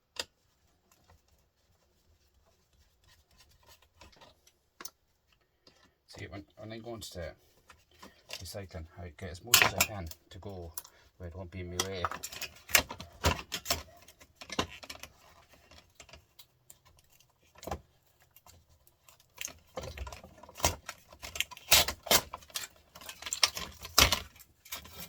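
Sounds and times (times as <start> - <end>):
parts being pried apart: 9.5 - 10.2, 11.8 - 25.0
small metal and plastic parts clinking: 9.5 - 10.9, 11.7 - 25.0.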